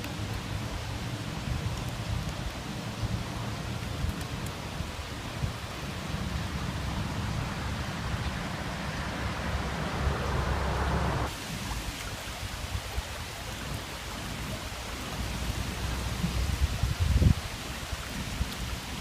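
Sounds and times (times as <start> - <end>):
river water running: 0.0 - 19.0
low rumble: 6.1 - 11.3.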